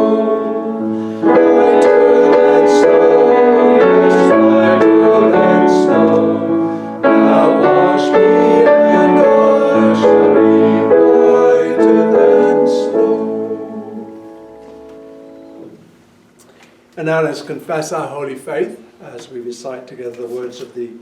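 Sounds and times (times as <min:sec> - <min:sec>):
piano playing hymn chords: 0:00.0 - 0:15.8.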